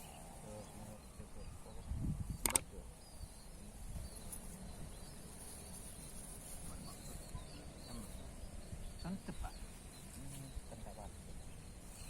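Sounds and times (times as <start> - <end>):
insects droning: 0.0 - 12.0
sharp clicks: 2.4 - 2.7.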